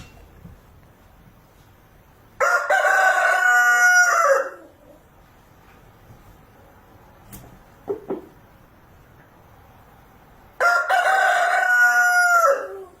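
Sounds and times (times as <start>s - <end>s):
rooster crowing: 2.4s - 4.8s, 10.6s - 13.0s.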